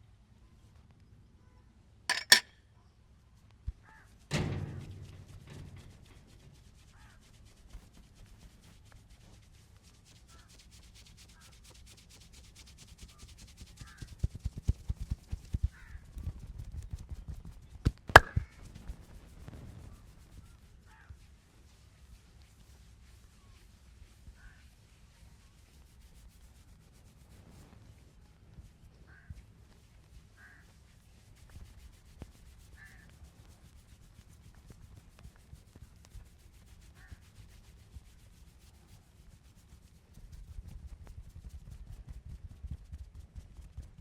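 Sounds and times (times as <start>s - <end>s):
heavy thump: 4.3s - 6.2s
sharp cracks: 18.2s - 18.4s
patting slaps: 18.2s - 18.5s.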